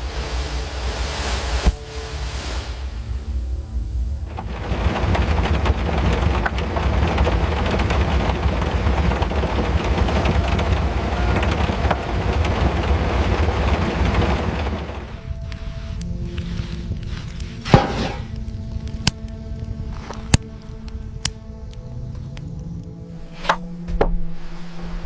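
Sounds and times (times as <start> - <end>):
heavy rain pattering: 0.0 - 23.4
low rumble of thunder: 3.0 - 21.2.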